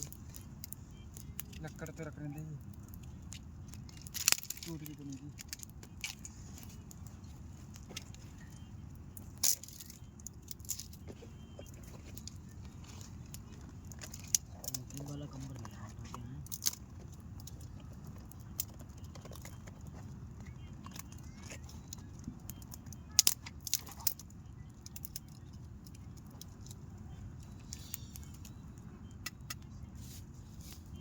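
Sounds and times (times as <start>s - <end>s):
camping gear clicks and clinks: 0.0s - 31.0s.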